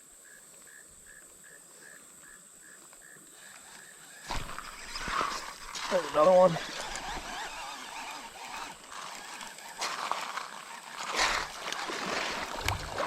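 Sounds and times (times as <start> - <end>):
creek water running: 4.3 - 13.0
water splashes: 11.0 - 13.0.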